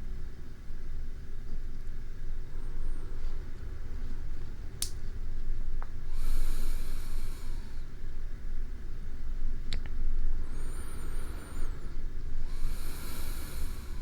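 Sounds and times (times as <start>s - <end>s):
low background rumble: 0.0s - 14.0s
sleeping person breathing: 6.0s - 8.0s, 10.3s - 14.0s.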